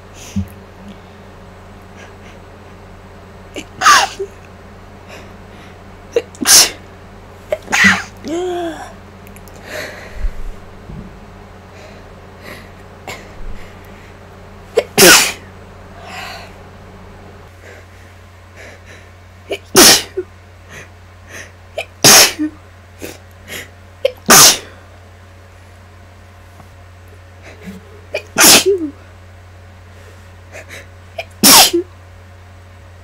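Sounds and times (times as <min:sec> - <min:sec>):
woman sneezing: 0:03.6 - 0:04.3, 0:06.2 - 0:06.8, 0:07.5 - 0:08.9, 0:14.8 - 0:15.5, 0:19.5 - 0:20.2, 0:21.8 - 0:23.2, 0:24.0 - 0:24.8, 0:27.6 - 0:29.0, 0:31.2 - 0:31.9.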